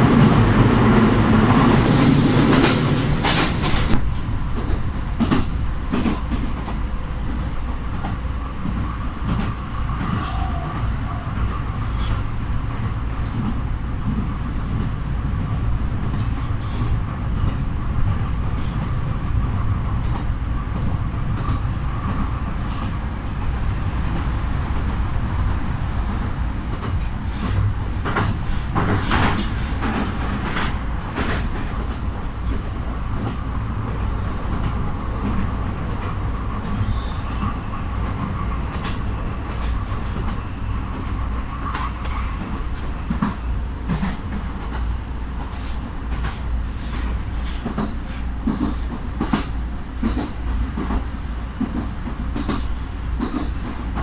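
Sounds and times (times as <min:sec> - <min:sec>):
train running rumble: 0:00.0 - 0:54.0
wheels clacking over rails: 0:01.8 - 0:04.0.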